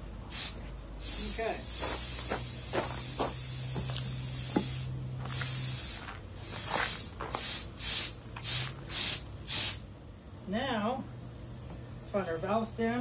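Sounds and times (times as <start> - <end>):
compressed air hissing: 0.3 - 9.9.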